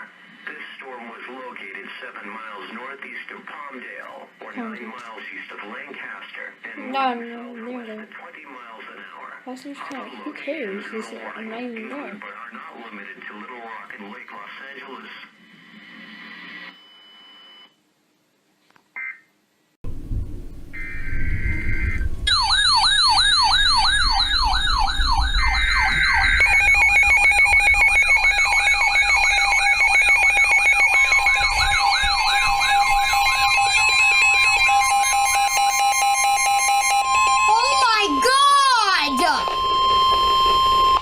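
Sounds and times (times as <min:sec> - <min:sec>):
low rumble: 0:19.8 - 0:29.7
steady tones: 0:19.8 - 0:41.0
electronic siren yelping: 0:20.7 - 0:41.0.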